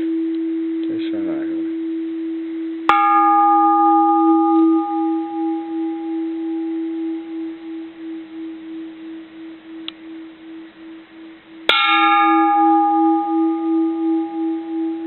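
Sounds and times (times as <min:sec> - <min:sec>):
temple bell ringing: 0:00.0 - 0:15.0
bell clang: 0:02.9 - 0:10.0, 0:11.7 - 0:15.0.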